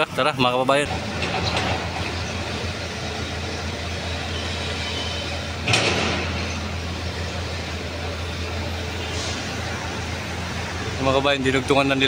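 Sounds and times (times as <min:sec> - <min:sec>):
street traffic hum: 0:00.0 - 0:12.0
short sharp hiss: 0:09.0 - 0:09.6.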